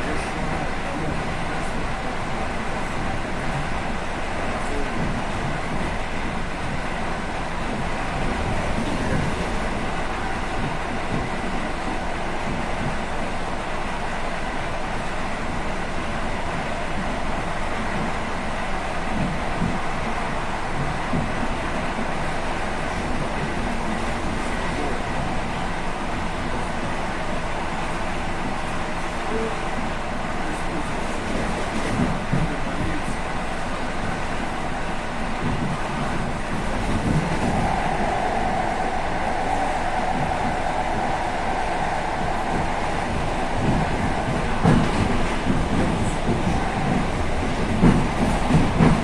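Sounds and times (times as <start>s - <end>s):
train wheels rumbling on rail: 0.0s - 49.0s
electric train running: 30.5s - 49.0s.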